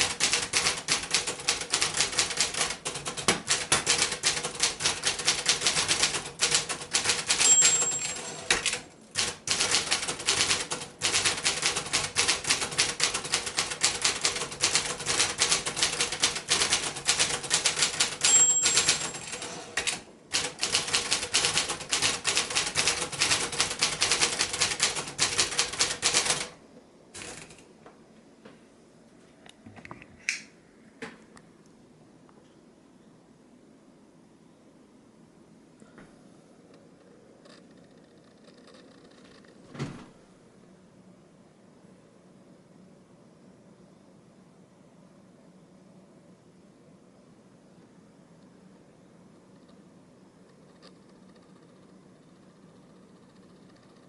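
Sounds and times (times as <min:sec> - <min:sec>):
typewriter carriage return: 0:00.0 - 0:26.5, 0:27.2 - 0:27.7
manual typewriter typing: 0:00.0 - 0:26.6, 0:27.2 - 0:27.7
typewriter margin bell ring: 0:06.9 - 0:08.8, 0:17.5 - 0:20.0.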